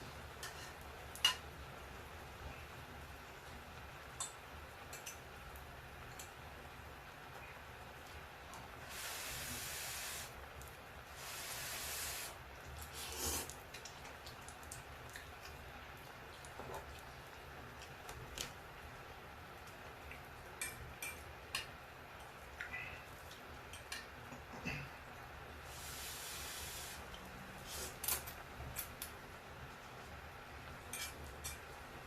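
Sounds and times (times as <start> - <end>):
hiss: 8.8 - 10.4, 11.1 - 13.5, 25.6 - 28.0.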